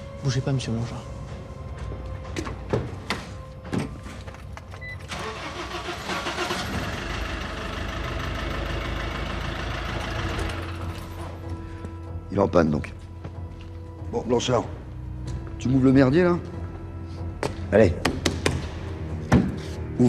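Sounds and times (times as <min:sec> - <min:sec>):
truck engine idling: 0:05.1 - 0:11.6.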